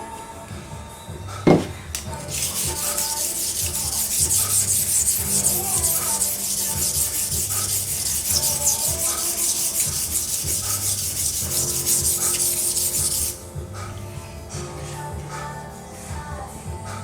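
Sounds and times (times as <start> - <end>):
background music with steady beat: 0.0 - 17.0
knife being ground on abrasive: 1.5 - 13.4.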